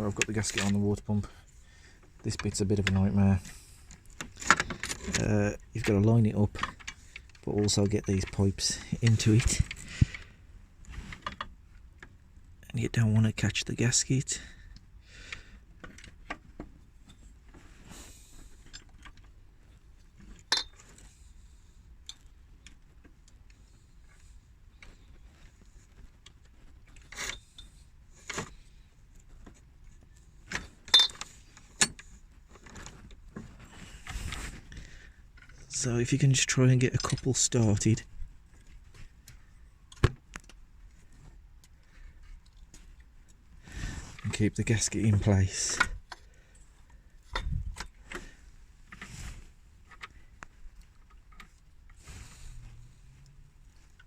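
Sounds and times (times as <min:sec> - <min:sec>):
metallic clinks and scrapes: 0:27.0 - 0:28.4, 0:30.6 - 0:32.9.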